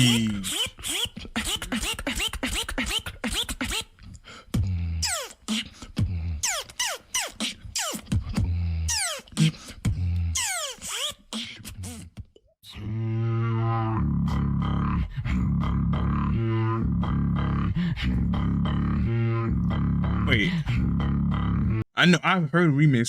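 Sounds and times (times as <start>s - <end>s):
beatboxing bass kicks: 0.0s - 3.9s, 4.5s - 6.6s, 7.2s - 12.3s
beatboxing mouth clicks: 0.0s - 12.5s, 19.6s - 20.6s
low buzzing vocal bass: 12.7s - 21.8s.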